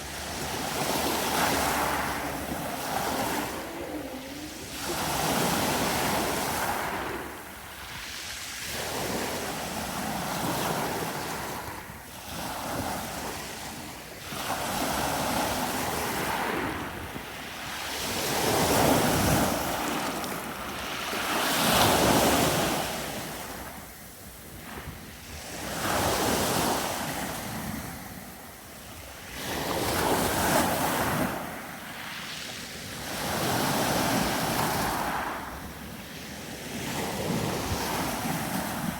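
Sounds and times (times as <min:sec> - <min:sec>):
sea waves breaking on beach: 0:00.0 - 0:38.9
wind buffeting microphone: 0:32.8 - 0:38.9.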